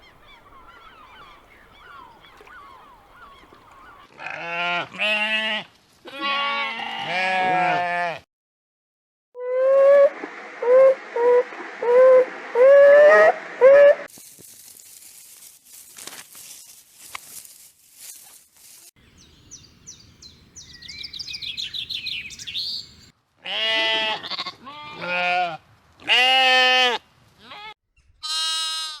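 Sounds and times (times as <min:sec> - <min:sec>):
goats or sheep bleating: 0:04.1 - 0:08.2, 0:23.4 - 0:29.0.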